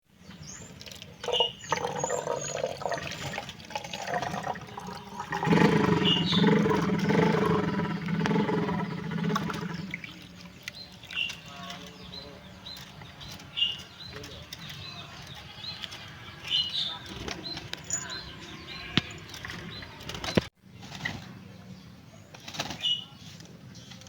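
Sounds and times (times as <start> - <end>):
bird chirping: 0.1 - 20.5
low noise: 3.7 - 22.4.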